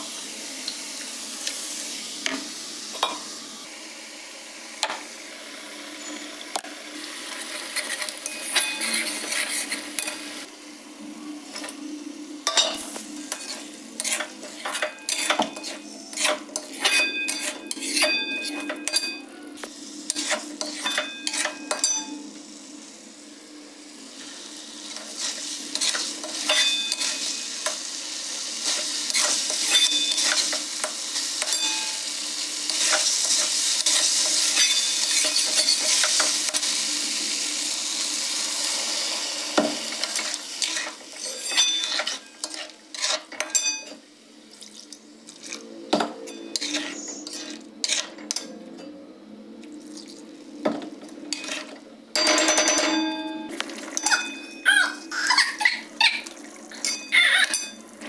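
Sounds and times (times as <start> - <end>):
sizzling in hot oil: 0.0 - 45.6, 46.3 - 48.5, 49.8 - 58.0
metal spoon clinking on pan: 12.5 - 19.2, 20.6 - 22.2, 31.4 - 32.0, 34.6 - 36.0, 41.4 - 44.0, 51.3 - 54.7, 56.8 - 57.8.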